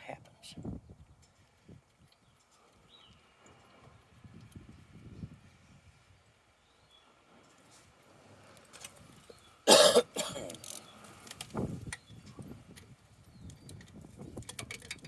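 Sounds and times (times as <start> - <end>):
man clearing throat: 9.7 - 10.5
man coughing: 9.7 - 10.6.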